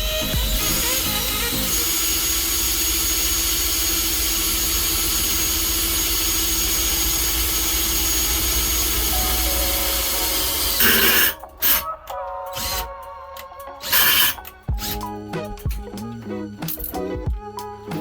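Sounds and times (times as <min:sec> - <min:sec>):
power tool running: 0:00.0 - 0:11.8, 0:13.8 - 0:15.1.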